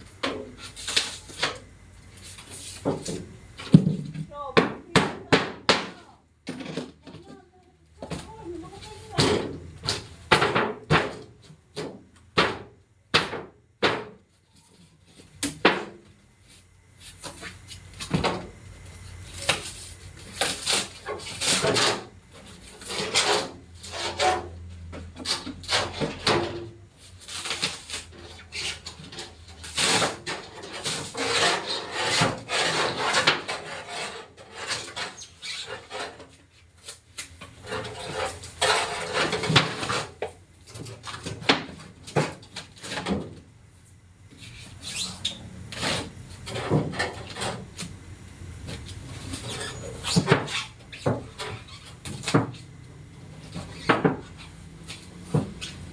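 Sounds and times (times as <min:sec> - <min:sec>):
scraping and rubbing on metal: 0:02.2 - 0:03.3, 0:19.0 - 0:41.4, 0:44.3 - 0:47.9, 0:48.7 - 0:55.9.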